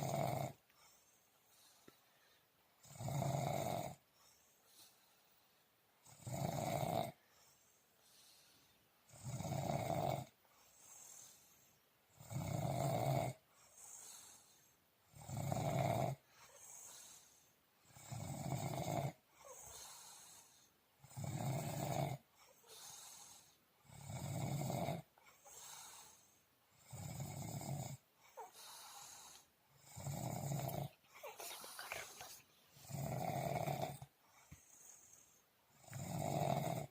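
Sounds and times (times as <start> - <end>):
person snoring loudly: 0.0 - 0.6, 2.8 - 4.0, 6.0 - 7.2, 9.1 - 10.3, 21.0 - 22.2, 23.8 - 25.1, 26.8 - 28.0, 29.8 - 34.1, 35.8 - 36.9
faint breathing: 0.7 - 2.7, 4.0 - 5.8, 7.1 - 8.9, 10.4 - 11.9, 13.4 - 14.9, 16.2 - 17.7, 19.3 - 20.8, 22.2 - 23.8, 25.2 - 26.6, 28.2 - 29.9, 30.6 - 33.2, 34.0 - 35.8.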